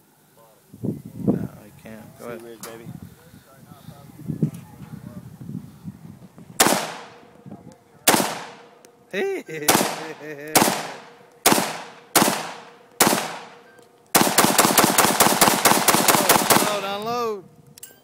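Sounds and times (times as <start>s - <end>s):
rapid gunfire: 6.6s - 7.2s, 8.1s - 8.7s, 9.7s - 13.6s, 14.2s - 16.9s
rifle shots with echo: 6.6s - 7.3s, 8.1s - 8.8s, 9.6s - 17.0s.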